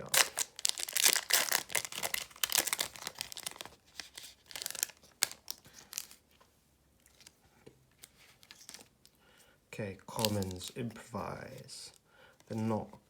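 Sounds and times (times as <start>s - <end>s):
plastic wrapper crinkling: 0.0s - 6.2s, 8.2s - 9.1s, 10.1s - 10.8s.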